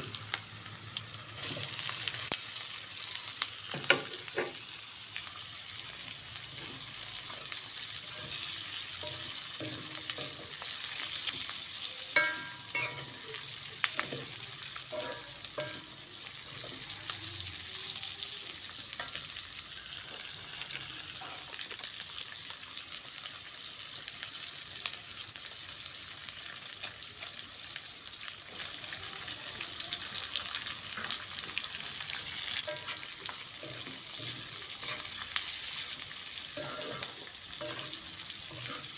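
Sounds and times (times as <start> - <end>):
food sizzling in hot oil: 0.0 - 38.9
spatula scraping pan: 6.6 - 11.4, 12.2 - 13.4, 14.0 - 15.8, 32.2 - 38.9.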